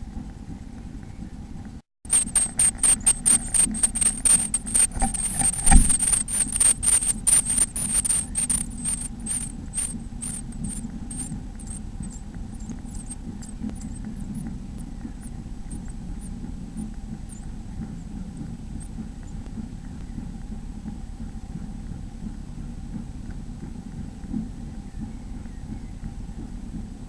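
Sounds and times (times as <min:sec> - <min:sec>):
faint hum: 0:00.0 - 0:27.0
chicks cheeping: 0:05.8 - 0:16.4.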